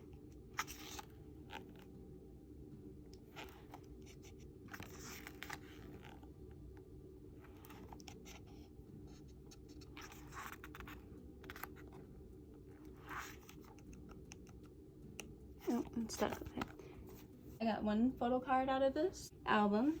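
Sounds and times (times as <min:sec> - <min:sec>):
low hum: 0:00.0 - 0:20.0
paper rustling and scraping: 0:03.3 - 0:06.2, 0:09.5 - 0:12.0.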